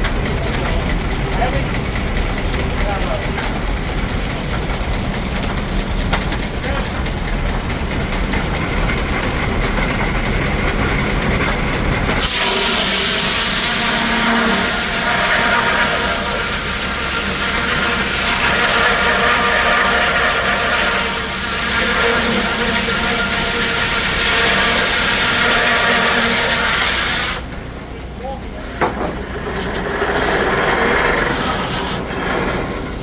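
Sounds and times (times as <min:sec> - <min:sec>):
sawmill low rumble: 0:00.0 - 0:33.0
high hissing whine: 0:12.3 - 0:26.8.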